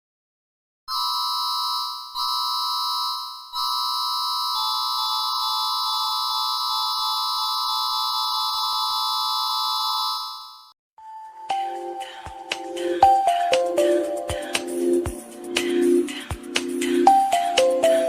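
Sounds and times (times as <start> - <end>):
electronic warning siren: 2.2 - 10.7.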